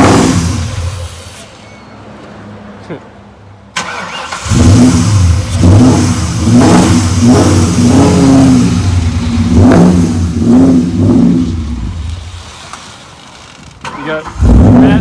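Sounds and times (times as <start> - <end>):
car engine revving: 0.0 - 1.4, 3.8 - 13.3, 14.2 - 15.0.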